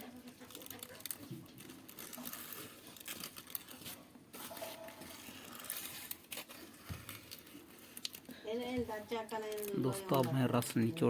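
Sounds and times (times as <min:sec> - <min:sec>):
food crackling and tearing by hand: 0:00.0 - 0:08.4.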